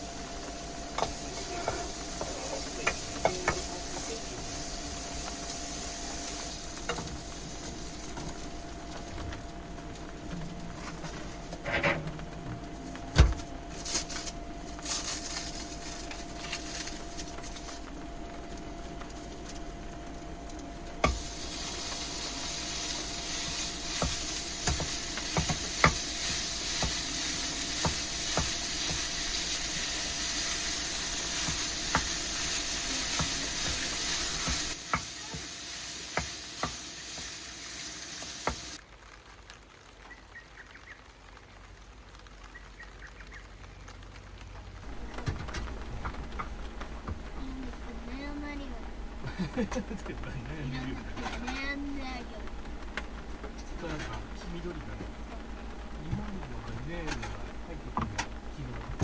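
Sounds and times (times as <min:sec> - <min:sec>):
food sizzling in a frying pan: 0:00.0 - 0:59.0
utensils knocking cookware: 0:23.4 - 0:29.8.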